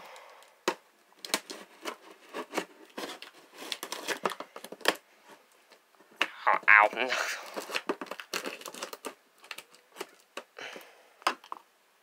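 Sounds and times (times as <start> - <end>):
packaging crinkling and tearing: 1.2 - 5.0, 7.2 - 10.6.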